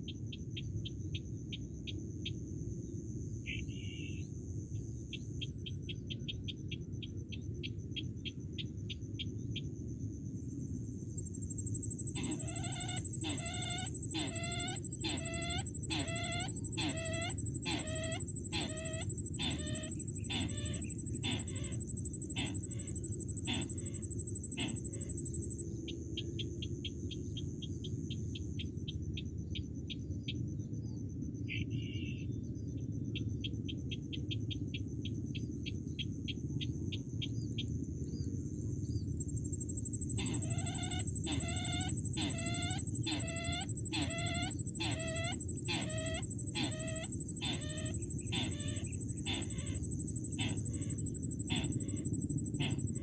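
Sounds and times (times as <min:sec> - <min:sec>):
steady high whine: 0:11.0 - 0:25.9, 0:38.6 - 0:53.0
downward-sliding bird calls: 0:12.0 - 0:25.1, 0:40.2 - 0:53.0.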